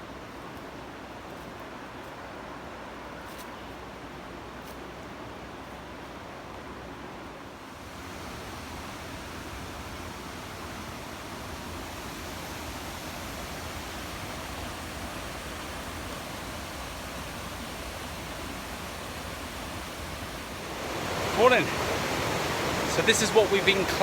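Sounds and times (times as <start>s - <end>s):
waterfall rushing: 7.7s - 24.0s.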